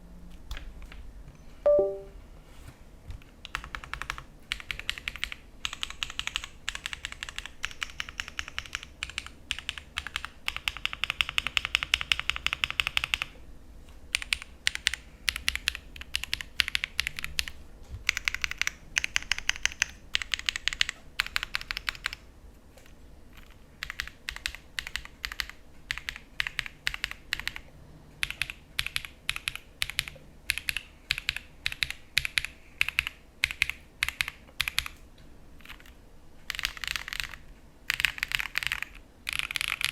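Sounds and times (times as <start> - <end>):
mechanical keyboard typing: 1.7 - 2.1, 3.4 - 13.3, 14.1 - 22.2, 22.8 - 35.0, 35.6 - 39.9.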